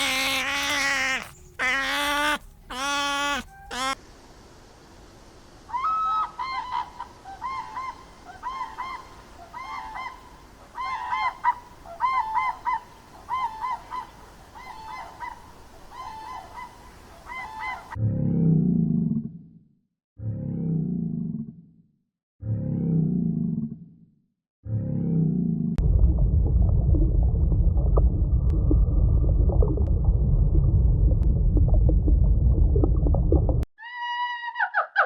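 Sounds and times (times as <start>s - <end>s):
geese honking: 0.0s - 4.0s
loud low rumbling: 25.8s - 33.7s.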